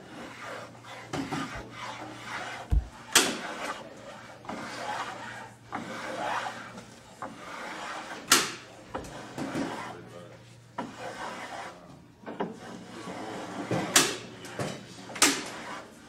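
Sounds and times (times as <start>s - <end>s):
hand plane shaving wood: 0.1s - 8.2s
sharp wooden knocks: 2.7s - 3.0s.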